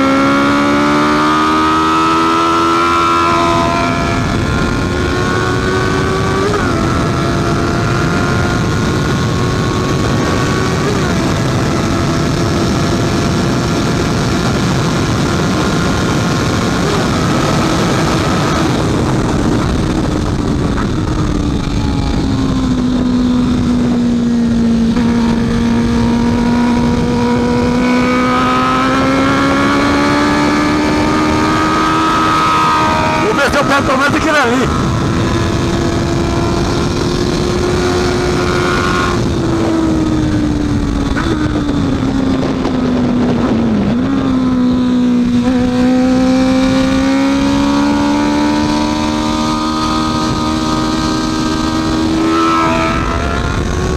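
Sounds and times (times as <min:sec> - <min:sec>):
motorcycle engine at high revs: 0:00.0 - 0:53.9
rush of wind: 0:00.0 - 0:53.9.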